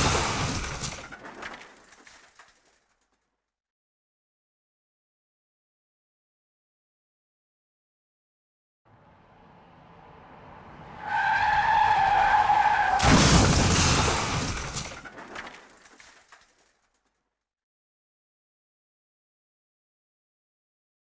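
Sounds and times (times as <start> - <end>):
loud crash of impact: 0.0 - 2.5, 12.9 - 16.5
debris clattering: 0.0 - 3.2, 12.8 - 17.2
vehicle approaching: 8.9 - 13.0
tyres squealing: 11.0 - 13.1.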